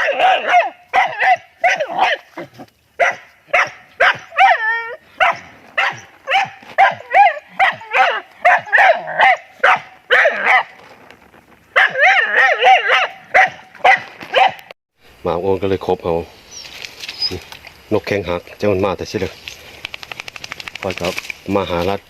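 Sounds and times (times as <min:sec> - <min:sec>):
dog barking sharply: 0:00.0 - 0:02.3, 0:03.0 - 0:04.6, 0:05.2 - 0:10.7, 0:11.8 - 0:14.7
dog wavering cry: 0:00.0 - 0:02.3, 0:03.0 - 0:10.7, 0:11.8 - 0:13.6.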